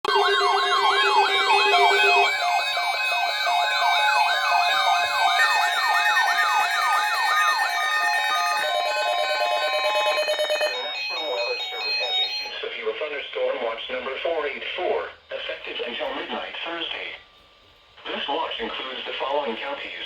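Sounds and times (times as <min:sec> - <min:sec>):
electronic siren yelping: 0:00.0 - 0:12.6
steady electronic tones: 0:00.0 - 0:12.9.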